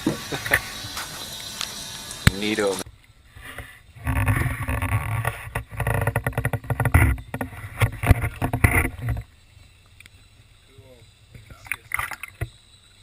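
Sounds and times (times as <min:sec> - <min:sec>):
camera knocking and scraping: 0:03.6 - 0:09.3.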